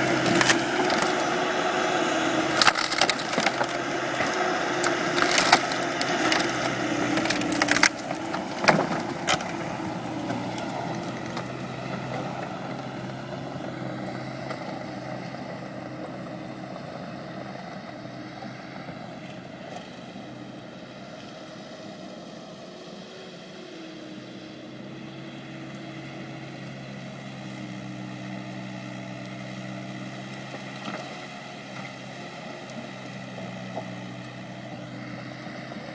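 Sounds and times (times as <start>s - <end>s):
scrap lumber cracking and clattering: 0.0s - 12.3s
skid steer engine running: 0.0s - 35.9s.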